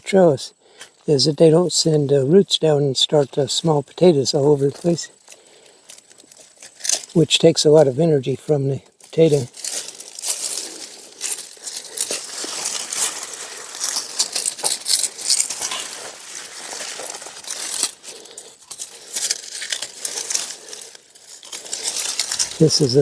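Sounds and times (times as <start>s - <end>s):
leafy vines rustling: 0.0s - 23.0s
hand clippers snipping: 5.2s - 7.2s, 9.1s - 23.0s.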